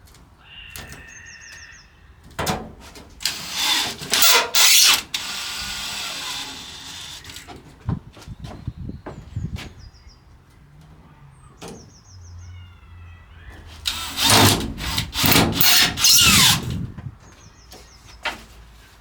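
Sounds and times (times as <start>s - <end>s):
wood scraping and rubbing: 2.4s - 9.5s, 13.5s - 16.9s.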